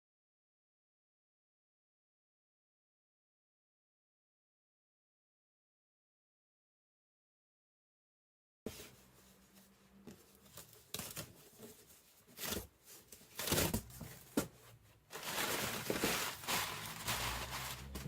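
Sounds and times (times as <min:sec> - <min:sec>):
rustling and crinkling: 0:08.7 - 0:18.0.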